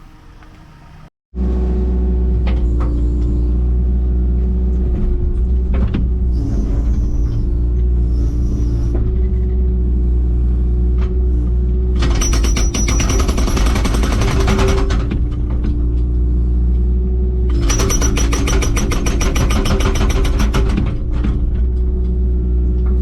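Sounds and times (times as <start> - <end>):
digger diesel engine running: 11.1 - 16.2, 16.8 - 23.0
loud metallic clatter: 12.0 - 15.6, 17.5 - 21.8.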